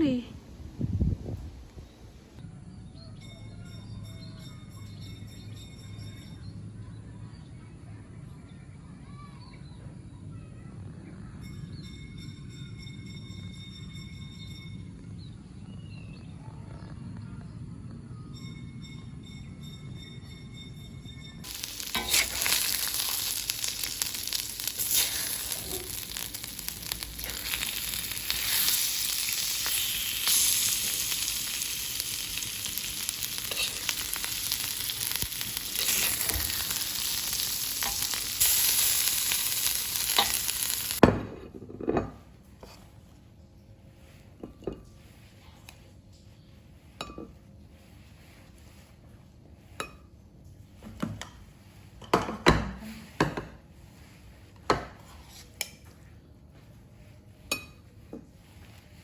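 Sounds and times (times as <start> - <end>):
food sizzling in a pan: 21.4 - 41.0.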